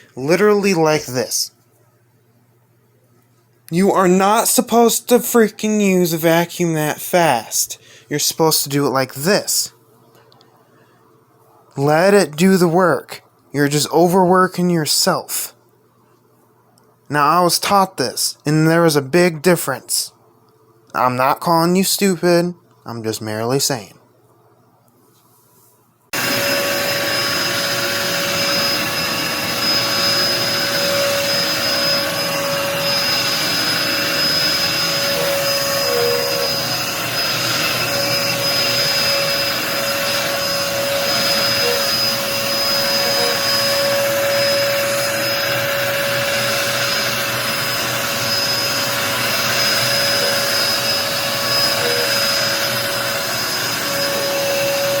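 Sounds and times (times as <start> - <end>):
vacuum cleaner running: 0.0 - 1.5, 3.7 - 8.6, 26.1 - 55.0.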